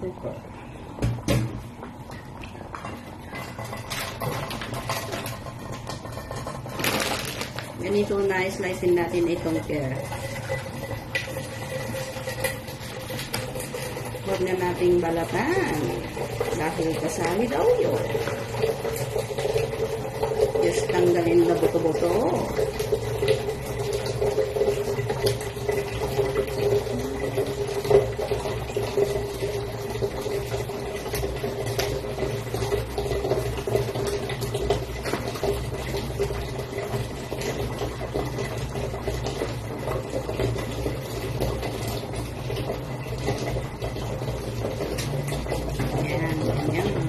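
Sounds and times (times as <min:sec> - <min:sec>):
kitchen rush and hum: 0:00.0 - 0:47.0.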